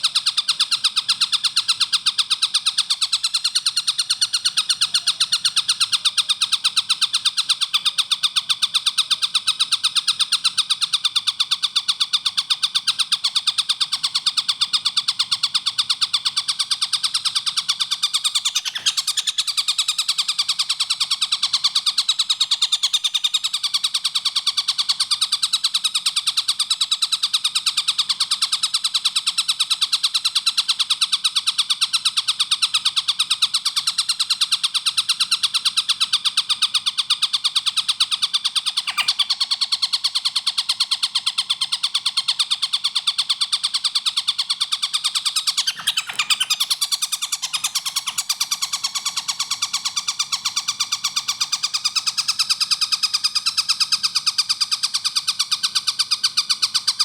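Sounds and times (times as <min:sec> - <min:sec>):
kingfisher rapid high calls: 0:00.0 - 0:08.6, 0:16.7 - 0:23.8, 0:37.6 - 0:41.8, 0:42.6 - 0:52.4.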